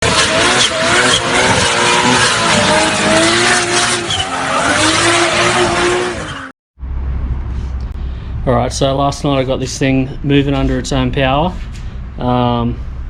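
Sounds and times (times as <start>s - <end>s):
tyres squealing: 0.0s - 6.5s
car engine at high revs: 0.0s - 8.0s.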